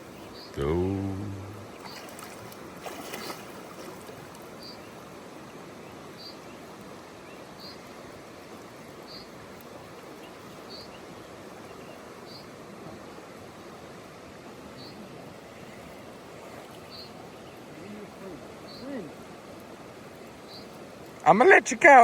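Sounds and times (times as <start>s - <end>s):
river water running: 0.0s - 22.0s
water splash: 1.8s - 4.4s.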